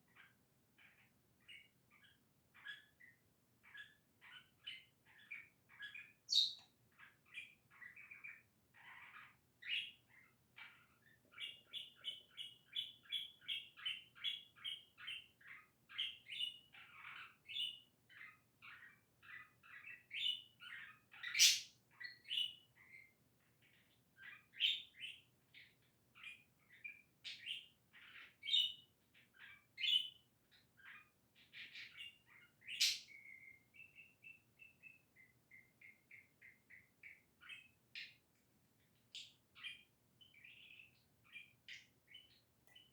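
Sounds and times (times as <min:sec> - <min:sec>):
budgerigar warbling and chattering: 0:00.2 - 0:23.1, 0:23.7 - 0:30.2, 0:30.8 - 0:38.2.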